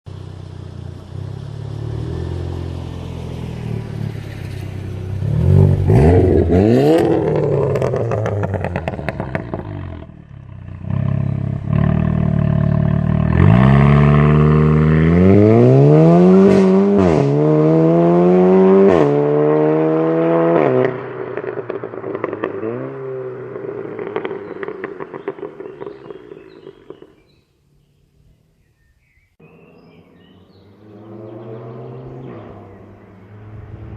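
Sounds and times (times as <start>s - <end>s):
car engine accelerating hard: 0.1s - 27.0s, 29.4s - 33.9s
exhaust pops and crackles: 5.4s - 15.1s, 20.8s - 27.2s.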